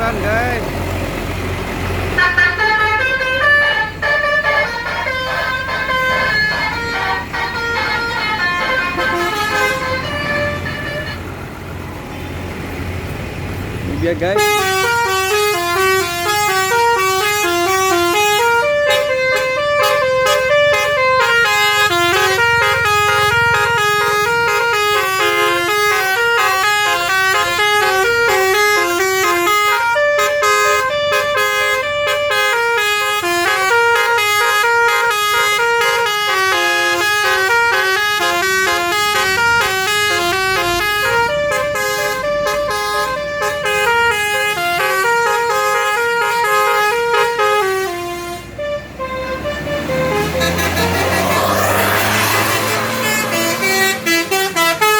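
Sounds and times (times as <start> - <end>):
low engine rumble: 0.0 - 36.2
musical horn playing a tune: 2.2 - 11.3, 14.4 - 54.9.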